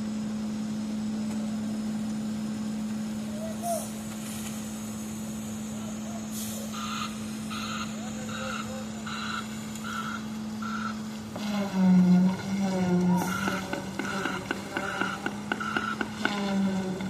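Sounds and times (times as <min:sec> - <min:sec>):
diesel engine humming: 0:00.0 - 0:17.0
reversing alarm beeping: 0:06.6 - 0:16.6.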